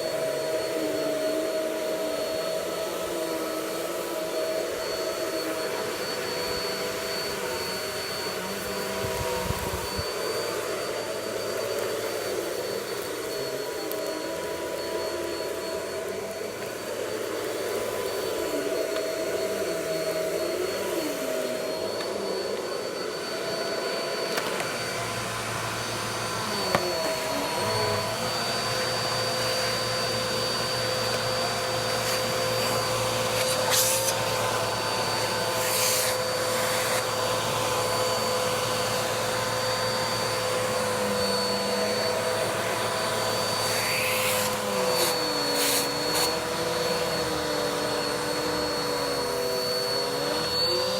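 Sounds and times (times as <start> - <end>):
vacuum cleaner running: 0.0 - 50.9.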